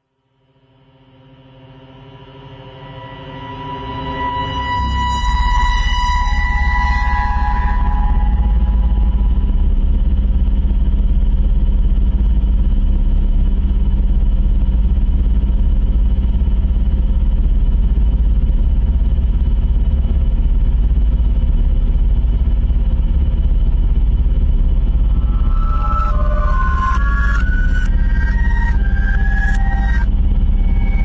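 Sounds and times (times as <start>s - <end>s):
deep synthesizer drone: 2.6s - 12.2s, 22.7s - 31.0s
faint held synth tones: 5.6s - 10.0s, 24.4s - 31.0s.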